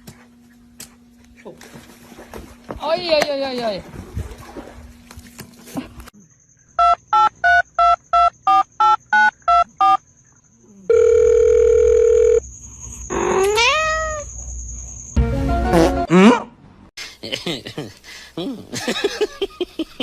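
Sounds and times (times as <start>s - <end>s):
phone keypad beeps: 6.8s - 10.0s
steady phone tone: 10.9s - 12.4s
cat meowing: 13.4s - 14.2s.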